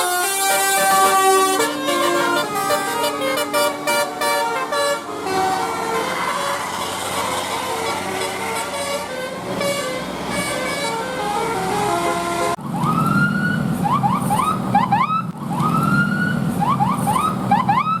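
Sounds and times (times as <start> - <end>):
bus horn playing a tune: 0.0 - 12.6.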